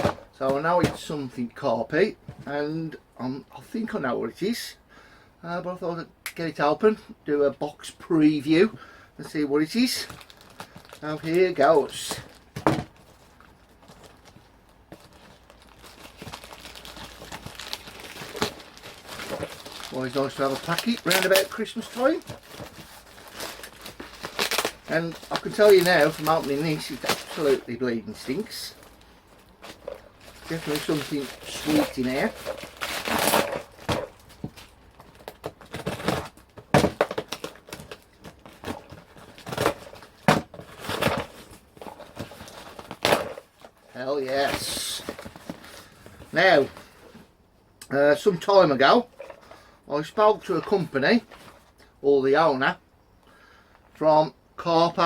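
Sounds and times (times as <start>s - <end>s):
packaging crinkling and ripping: 9.8s - 46.9s.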